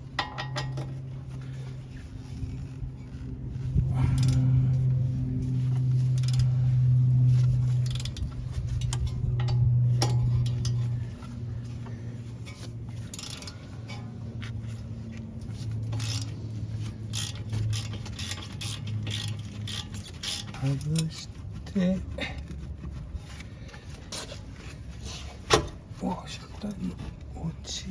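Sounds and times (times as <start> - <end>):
steady low hum: 0.0 - 27.9
metal tools clinking and scraping: 0.1 - 1.6, 7.3 - 21.3.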